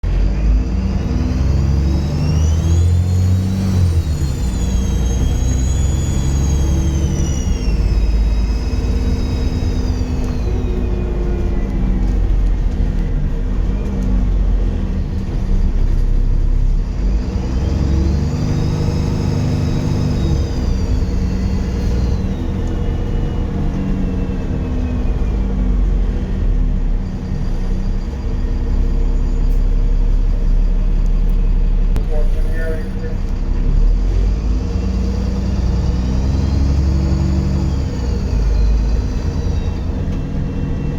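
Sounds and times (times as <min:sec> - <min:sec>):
diesel bus engine pulling hard: 0:00.0 - 0:40.9
high turbo whistle: 0:01.0 - 0:12.4, 0:17.6 - 0:25.4.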